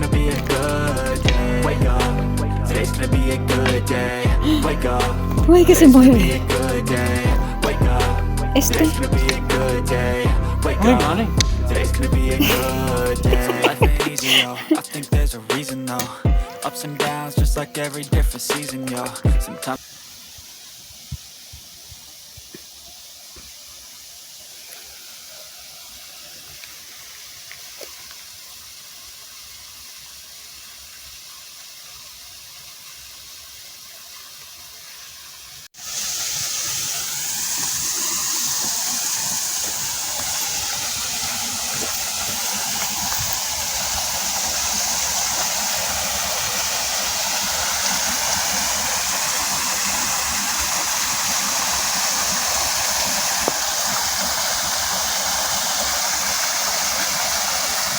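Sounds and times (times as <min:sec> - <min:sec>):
waterfall rushing: 0:00.0 - 0:19.2, 0:35.8 - 0:57.9
faint rushing water: 0:00.0 - 0:57.9.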